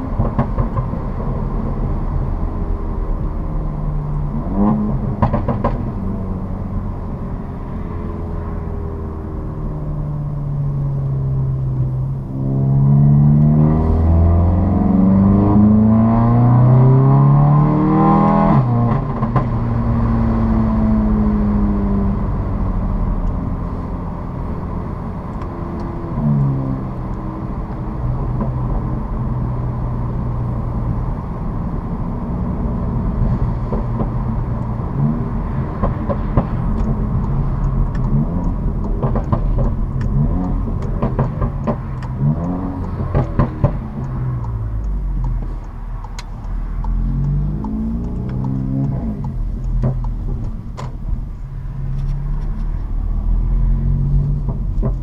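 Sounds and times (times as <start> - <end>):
car engine revving: 0.0 - 55.0
exhaust cracks: 32.4 - 55.0.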